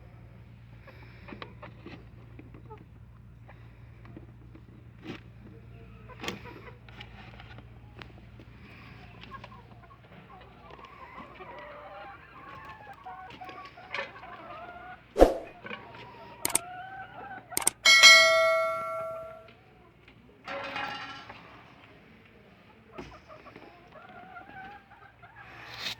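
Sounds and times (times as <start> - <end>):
clicks and knocks: 17.6 - 19.4.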